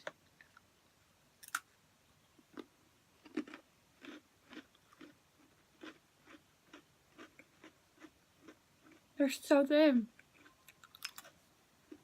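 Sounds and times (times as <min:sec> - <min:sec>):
crunchy chewing: 0:02.4 - 0:09.1, 0:10.2 - 0:12.0.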